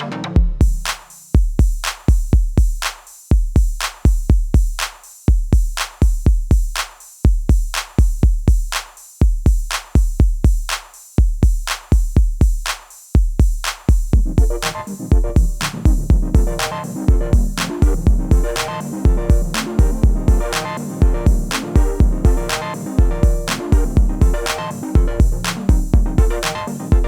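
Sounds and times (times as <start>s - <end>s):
electronic drum-machine beat: 0.2s - 27.0s.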